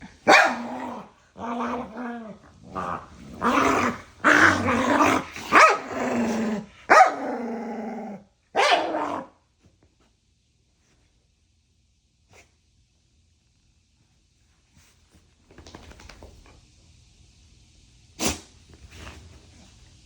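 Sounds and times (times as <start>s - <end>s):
dogs barking and growling: 0.0s - 9.4s.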